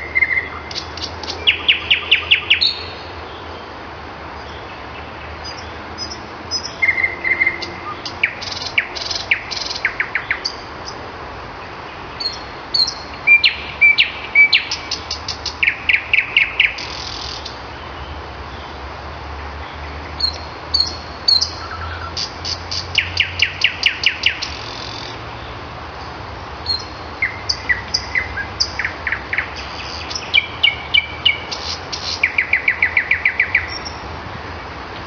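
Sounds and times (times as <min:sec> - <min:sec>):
nightingale singing: 0:00.0 - 0:03.6, 0:04.4 - 0:11.0, 0:11.9 - 0:18.8, 0:19.6 - 0:25.6, 0:26.6 - 0:34.1.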